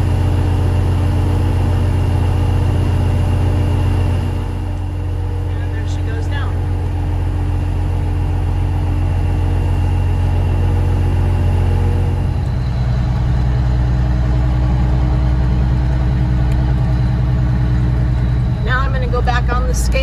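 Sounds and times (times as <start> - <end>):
truck engine running: 0.0 - 20.0.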